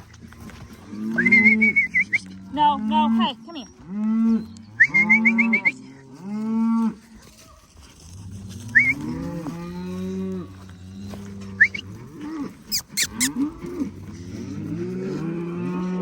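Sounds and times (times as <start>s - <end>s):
cattle mooing and bawling: 0.4s - 3.2s, 8.5s - 16.0s.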